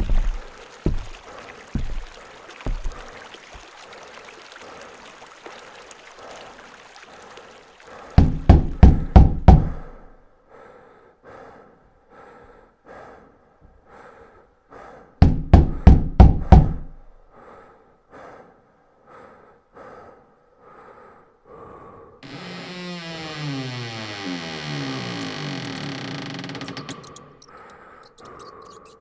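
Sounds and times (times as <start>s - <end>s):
soft evenly spaced thuds: 0.0s - 3.6s, 8.1s - 10.1s, 15.2s - 17.1s
loud rapid knocking on a door: 8.2s - 9.8s, 15.2s - 16.9s.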